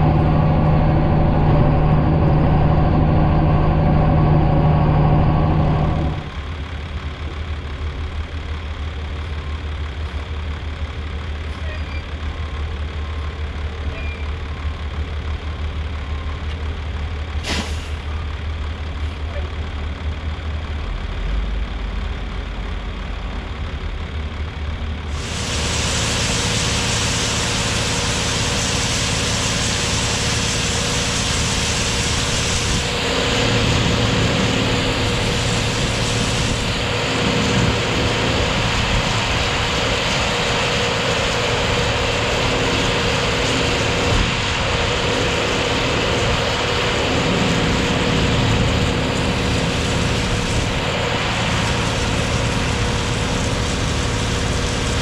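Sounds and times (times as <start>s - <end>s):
combine harvester drone: 0.0s - 55.0s
broad hiss: 17.4s - 18.0s, 25.1s - 44.0s.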